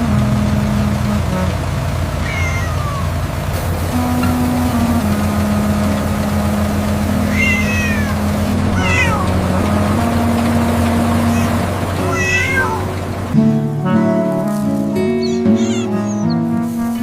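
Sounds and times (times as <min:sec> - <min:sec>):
steady low drone: 0:00.0 - 0:02.2, 0:03.2 - 0:16.8
cat meows: 0:02.2 - 0:03.2, 0:07.3 - 0:09.5, 0:11.3 - 0:13.0, 0:15.0 - 0:16.4.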